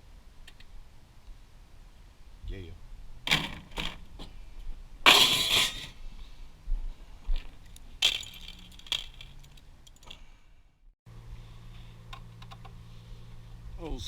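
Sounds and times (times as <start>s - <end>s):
metal parts clattering and clinking: 7.6s - 10.3s.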